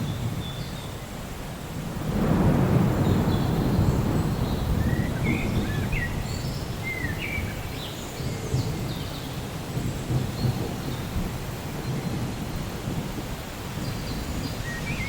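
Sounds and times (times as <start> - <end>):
steady rain: 0.0 - 15.0
thunder rumbling: 1.7 - 7.8, 8.5 - 15.0
bird chirping: 13.8 - 15.0.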